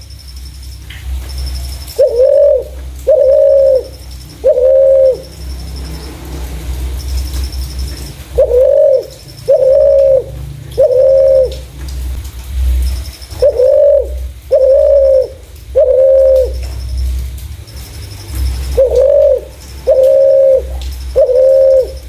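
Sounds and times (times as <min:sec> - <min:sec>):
dove cooing: 0:01.9 - 0:05.6, 0:07.7 - 0:11.7, 0:13.3 - 0:16.7, 0:18.5 - 0:22.0.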